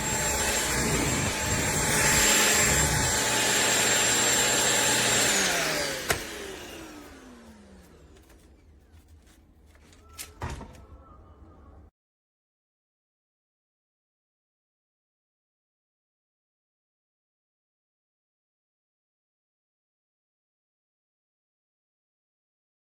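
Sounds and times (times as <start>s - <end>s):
vacuum cleaner whine: 0.0s - 8.6s.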